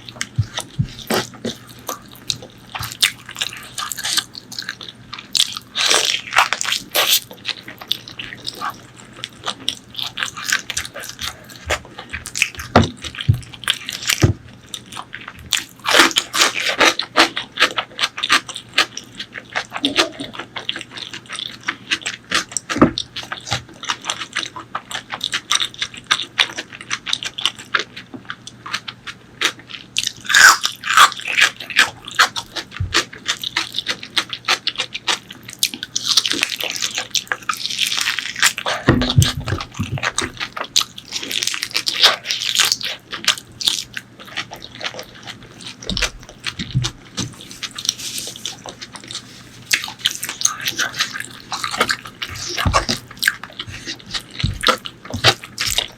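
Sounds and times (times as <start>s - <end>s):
wet chewing and lip smacking: 0.0s - 55.9s
crunching: 29.4s - 55.9s.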